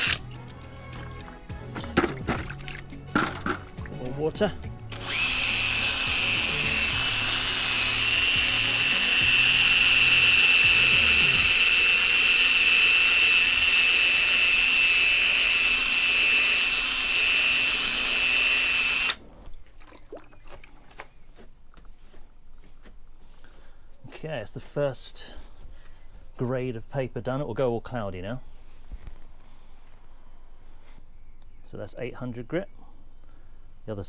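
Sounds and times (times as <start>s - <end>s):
power drill sanding whine: 0.0s - 0.3s, 4.2s - 19.2s.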